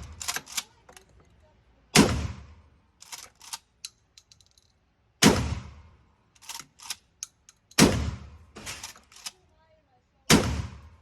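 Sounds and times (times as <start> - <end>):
gun action clacking: 0.0 - 1.4, 3.0 - 4.8, 6.4 - 7.9, 8.6 - 9.4.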